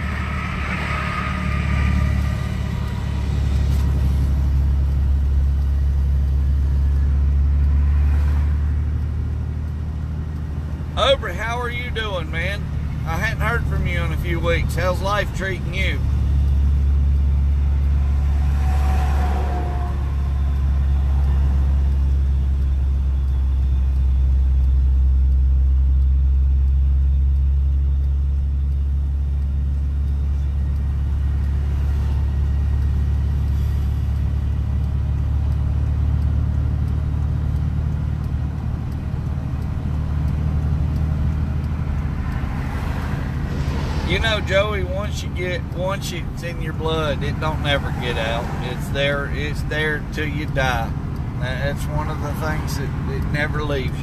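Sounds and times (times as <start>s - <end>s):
engine droning: 0.0s - 54.0s.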